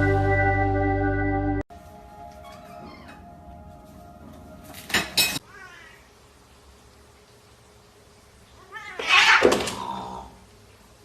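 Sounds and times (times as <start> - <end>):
cat meowing: 5.4 - 6.1, 8.6 - 9.6.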